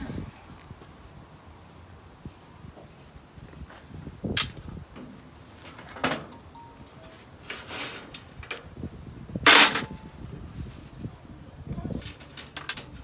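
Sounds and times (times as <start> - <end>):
scraping clatter: 4.4 - 8.7, 9.5 - 10.0, 12.0 - 13.0.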